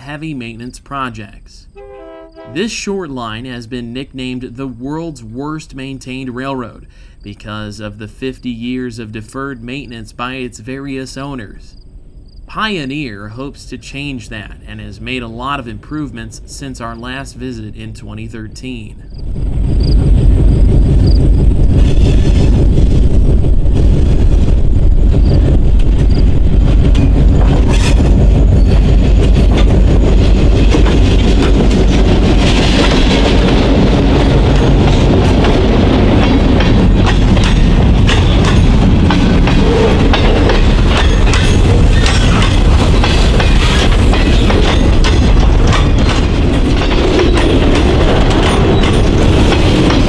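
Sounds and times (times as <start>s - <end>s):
freight train rumbling: 0.0s - 50.0s
wheels clacking over rail joints: 21.0s - 50.0s.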